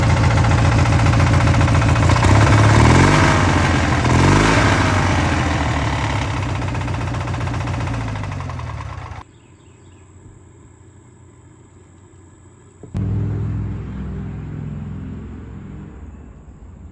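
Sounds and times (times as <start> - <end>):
engine with rod knock revving: 0.0 - 9.2.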